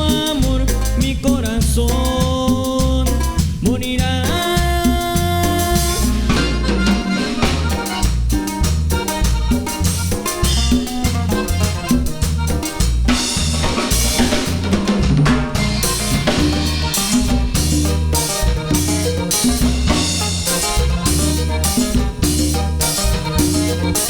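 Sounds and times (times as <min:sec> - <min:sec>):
band playing cumbia: 0:00.0 - 0:24.0
bass notes: 0:00.0 - 0:24.0
drum kit beat: 0:00.0 - 0:24.0.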